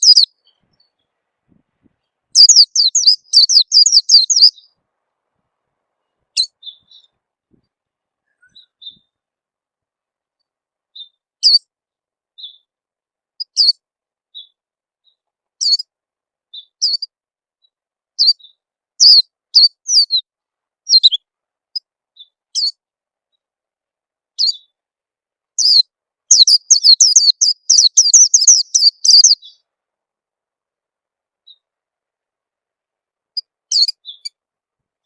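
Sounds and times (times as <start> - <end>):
high sharp bird chirps: 0.0 - 1.0, 2.4 - 4.8, 6.3 - 7.2, 8.2 - 9.2, 16.5 - 17.1, 18.2 - 20.2, 24.4 - 24.7, 25.6 - 29.6, 33.4 - 34.4.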